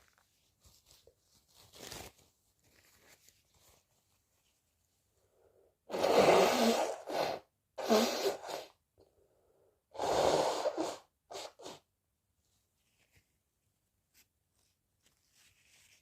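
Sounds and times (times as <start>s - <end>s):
person sneezing: 5.9s - 8.8s
person sniffing: 5.9s - 8.8s, 9.9s - 11.9s.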